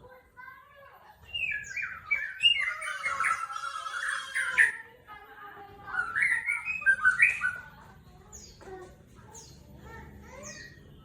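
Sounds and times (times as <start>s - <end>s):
bird singing whistled notes: 1.3s - 4.8s, 6.0s - 7.6s.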